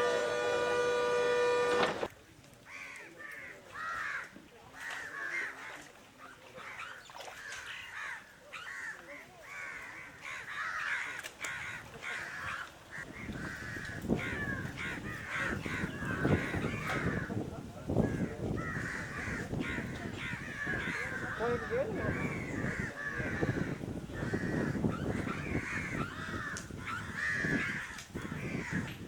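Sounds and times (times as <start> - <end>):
horn holding steady note: 0.0 - 2.1
crows cawing: 2.7 - 5.6, 7.9 - 17.4, 18.0 - 29.0.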